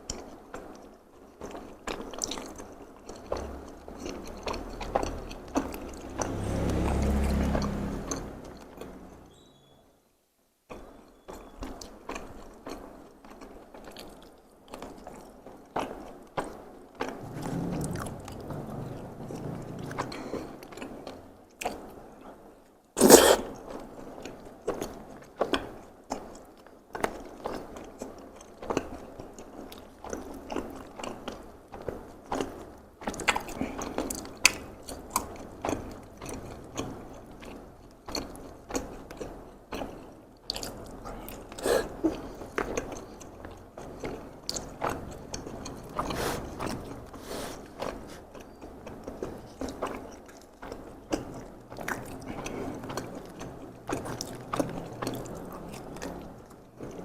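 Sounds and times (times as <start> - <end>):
close-miked chewing: 0.0 - 9.4, 10.7 - 57.0.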